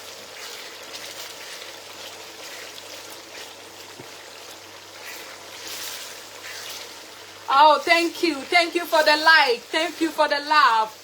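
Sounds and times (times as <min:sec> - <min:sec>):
stew sizzling in a pot: 0:00.0 - 0:11.0.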